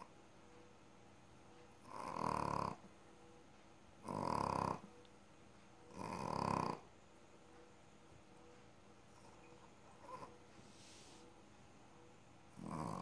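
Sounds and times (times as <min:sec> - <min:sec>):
animal snoring loudly: 0:01.8 - 0:02.8, 0:04.0 - 0:04.8, 0:05.9 - 0:06.9, 0:12.5 - 0:13.0.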